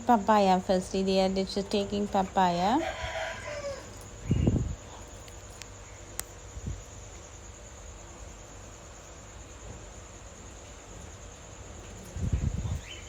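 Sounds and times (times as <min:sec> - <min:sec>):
high-pitched insect chorus: 0:00.0 - 0:13.0
low background hum: 0:00.0 - 0:13.0
faint clicks: 0:05.0 - 0:06.4.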